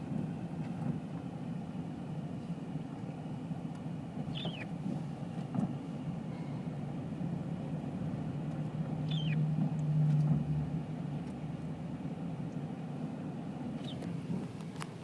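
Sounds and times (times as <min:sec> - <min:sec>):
car engine and road drone: 0:07.0 - 0:15.0.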